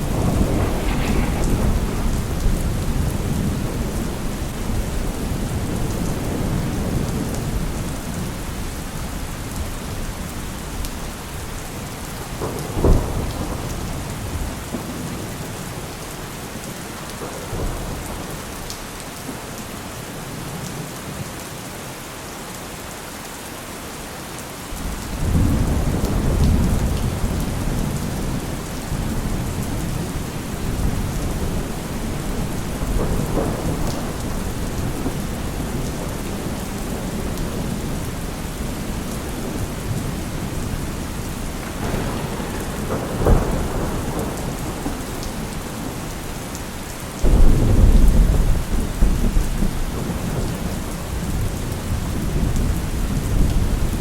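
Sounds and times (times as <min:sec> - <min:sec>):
thunder crack: 0:00.0 - 0:07.0, 0:24.8 - 0:37.9, 0:41.5 - 0:46.0, 0:47.2 - 0:50.5
low rumble of thunder: 0:00.0 - 0:18.7, 0:24.8 - 0:54.0
heavy rain falling: 0:00.0 - 0:54.0.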